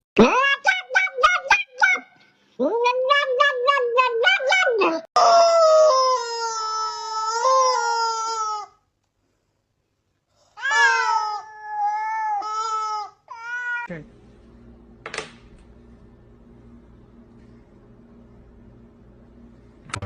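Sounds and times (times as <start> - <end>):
steady low hum: 13.9 - 20.0.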